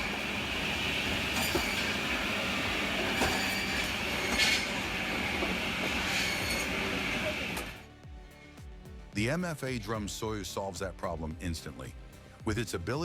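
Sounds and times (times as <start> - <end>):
machine grinding and squealing: 0.0 - 7.8.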